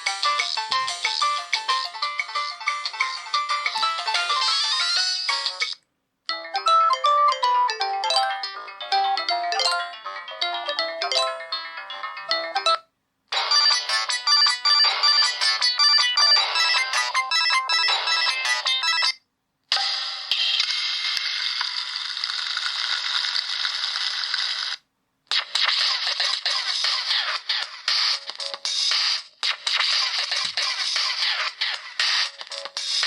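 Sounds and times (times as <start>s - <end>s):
polyphonic phone ringtones: 6.3s - 19.2s.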